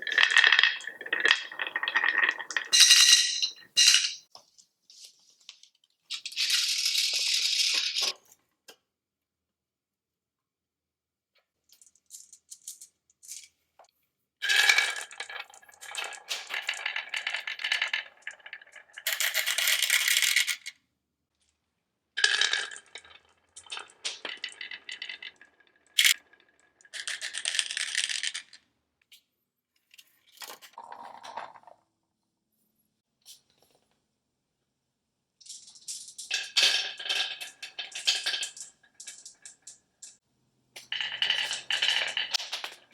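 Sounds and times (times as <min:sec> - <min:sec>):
marbles clattering down a run: 0:00.0 - 0:04.3, 0:14.5 - 0:20.7, 0:22.2 - 0:28.5, 0:35.4 - 0:40.2, 0:40.8 - 0:42.9.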